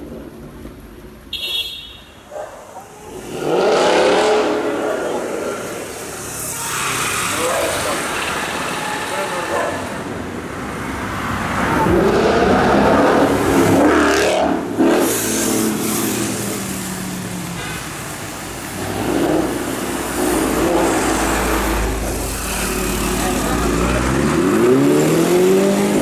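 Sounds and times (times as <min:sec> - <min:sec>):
car engine revving: 0:03.1 - 0:08.7, 0:11.2 - 0:17.3, 0:18.7 - 0:26.0.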